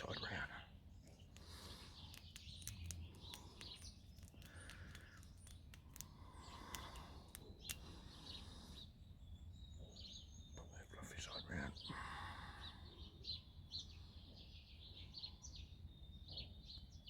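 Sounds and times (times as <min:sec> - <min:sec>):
small birds chirping: 0:00.0 - 0:17.0
faint sharp clicks: 0:01.1 - 0:08.1.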